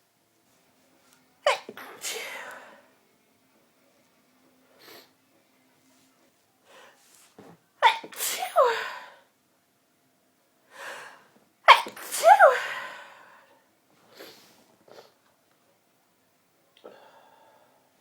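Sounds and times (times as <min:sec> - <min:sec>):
woman sneezing: 0:01.4 - 0:02.7, 0:07.8 - 0:09.2, 0:11.7 - 0:13.2.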